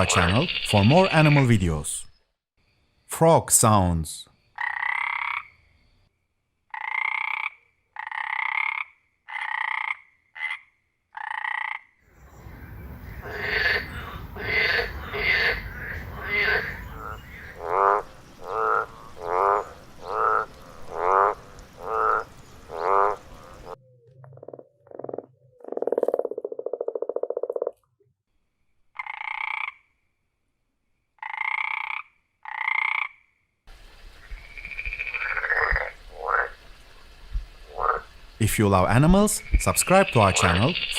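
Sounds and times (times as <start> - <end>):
trilled frog calls: 0.0 - 1.8, 4.4 - 5.8, 6.7 - 27.8, 29.0 - 30.0, 31.2 - 33.4, 34.0 - 40.9
frogs croaking: 0.0 - 27.8, 28.9 - 30.1, 31.2 - 40.9
low buzzing frog call: 11.2 - 27.7, 31.2 - 38.4
background hiss: 12.1 - 23.8, 33.7 - 40.9.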